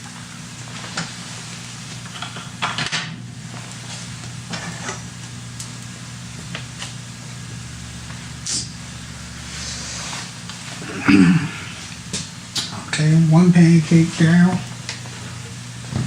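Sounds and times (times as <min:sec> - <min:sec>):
batter sizzling in frying pan: 0:00.0 - 0:10.9
steady low hum: 0:00.0 - 0:16.0.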